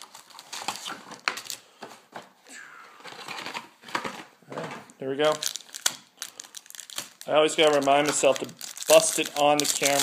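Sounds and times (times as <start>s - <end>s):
wrapper crinkling and tearing: 0.0s - 1.6s, 5.2s - 10.0s.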